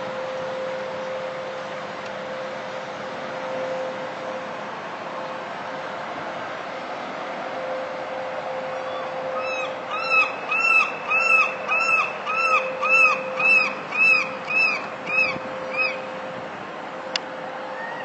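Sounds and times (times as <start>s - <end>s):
steady droning hum: 0.0s - 18.0s
bird calls rising and falling: 8.7s - 16.1s, 17.7s - 18.0s.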